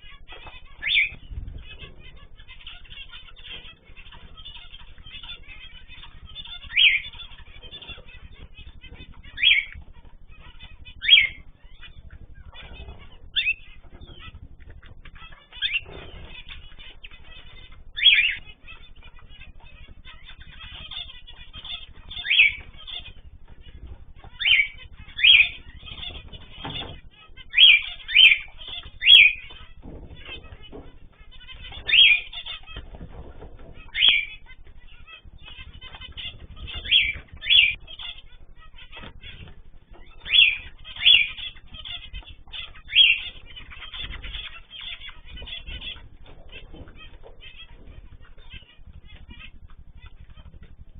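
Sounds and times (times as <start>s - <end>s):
loud high bird calls: 0.0s - 50.9s
soft bird chirping: 0.0s - 50.9s.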